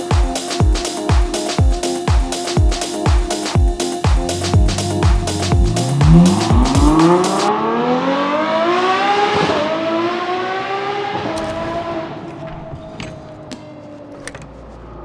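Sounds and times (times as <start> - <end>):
dance music: 0.0 - 7.5.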